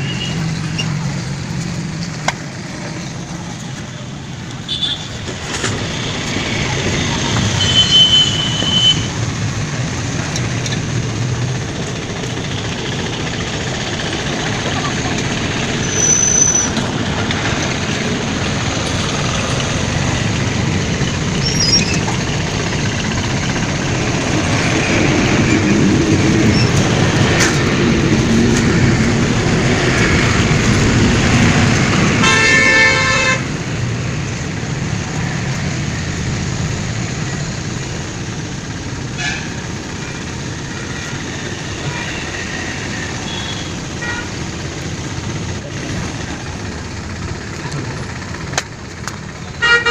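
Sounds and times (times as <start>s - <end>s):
road traffic noise: 0.0s - 49.9s
vehicle horn honking: 7.5s - 9.1s, 32.2s - 33.5s, 49.6s - 49.9s.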